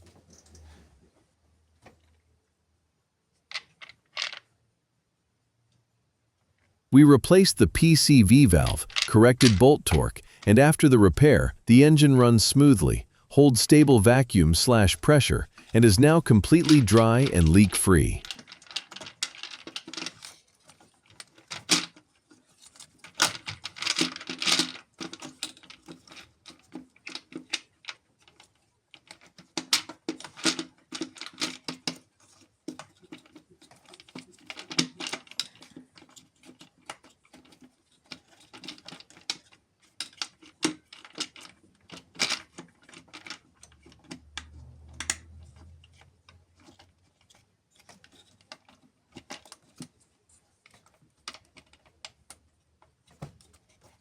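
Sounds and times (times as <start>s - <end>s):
hard objects clicking and clattering: 18.2s - 54.0s.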